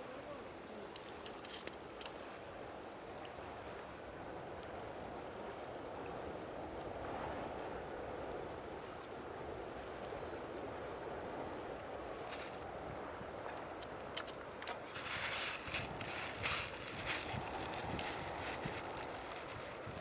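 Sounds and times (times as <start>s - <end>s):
insect chirping: 7.3s - 20.0s.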